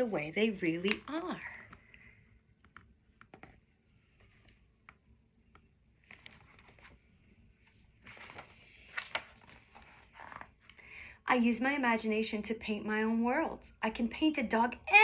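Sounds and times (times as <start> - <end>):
paper pages turning: 5.9 - 10.8.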